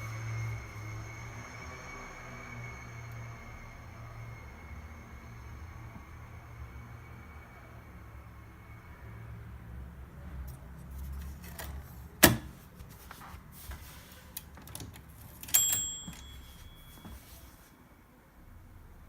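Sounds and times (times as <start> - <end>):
typewriter bell ringing: 15.3 - 17.5.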